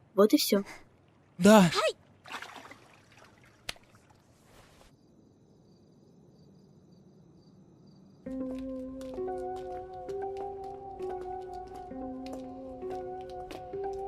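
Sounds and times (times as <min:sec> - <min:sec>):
insects chirring: 0:04.9 - 0:08.5
music: 0:08.3 - 0:14.0.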